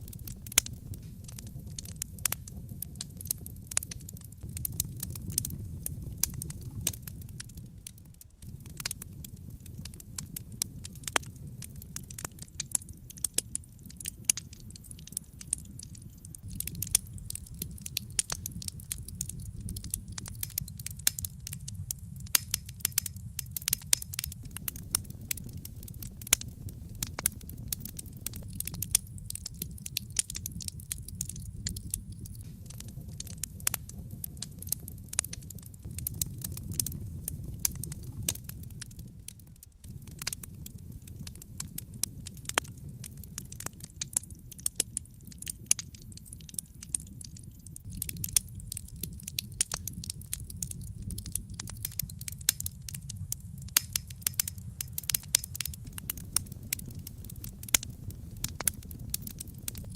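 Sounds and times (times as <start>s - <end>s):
fire rumbling: 0.0s - 59.9s
wood crackling and popping: 0.0s - 59.9s.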